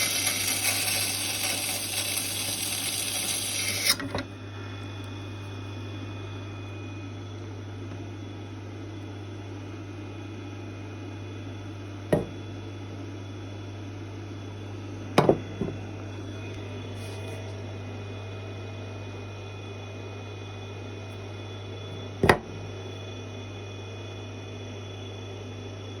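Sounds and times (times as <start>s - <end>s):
grinding machine humming: 0.0s - 7.0s, 11.6s - 13.2s, 14.4s - 17.8s.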